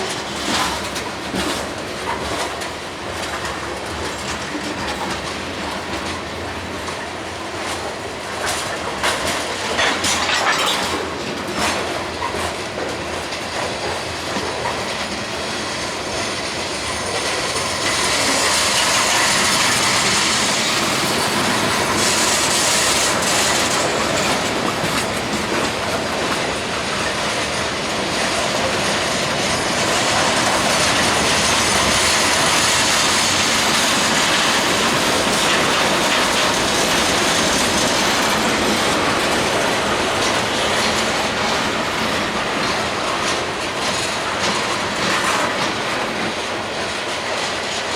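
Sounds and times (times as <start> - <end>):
freight train cars rolling on rails: 0.0 - 47.9
high hiss from train wheels: 11.8 - 47.9.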